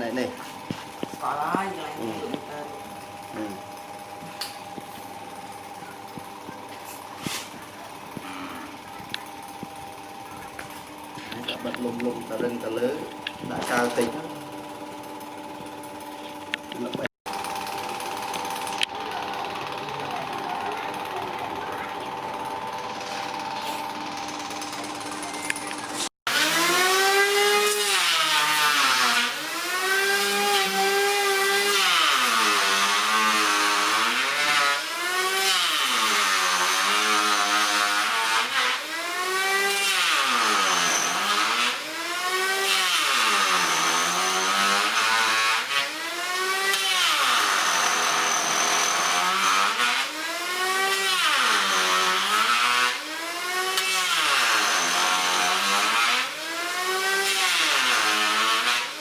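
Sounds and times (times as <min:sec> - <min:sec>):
motor with rising and falling pitch: 0:16.8 - 0:59.0.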